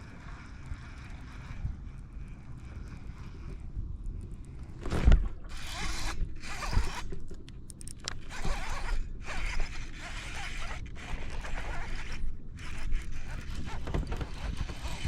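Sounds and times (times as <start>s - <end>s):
fishing reel whirring: 0.0s - 4.6s, 5.4s - 15.0s.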